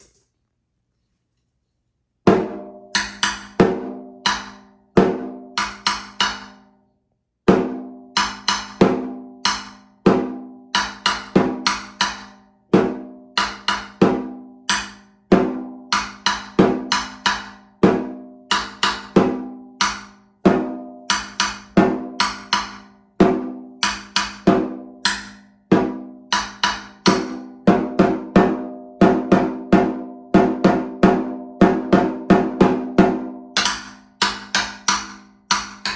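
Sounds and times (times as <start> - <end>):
snare drum played with sticks: 7.6 - 12.4, 13.4 - 35.9.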